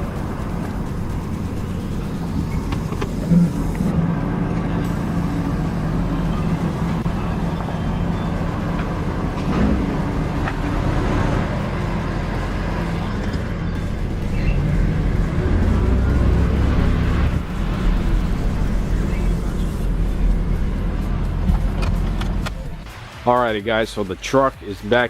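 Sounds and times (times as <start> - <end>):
diesel truck engine running: 0.0 - 25.0.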